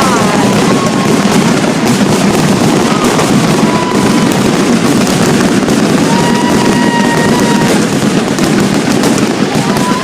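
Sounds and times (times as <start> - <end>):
firework whistling tones: 0.0 - 10.0
fireworks crackles and bangs: 0.0 - 10.0.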